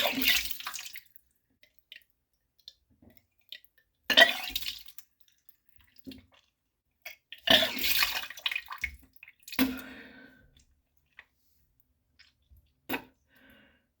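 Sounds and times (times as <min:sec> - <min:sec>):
liquid splashing: 0:07.5 - 0:09.8.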